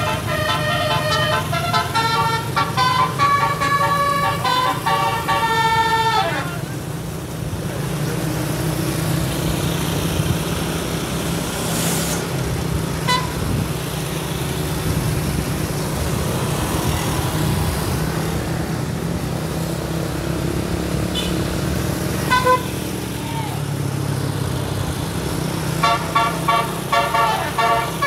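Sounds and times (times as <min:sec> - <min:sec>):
car horn toot: 0:00.0 - 0:06.6, 0:13.0 - 0:13.6, 0:21.1 - 0:21.4, 0:22.3 - 0:22.8, 0:25.8 - 0:28.0
road traffic and engine noise: 0:00.0 - 0:28.0
short hiss: 0:11.5 - 0:12.4.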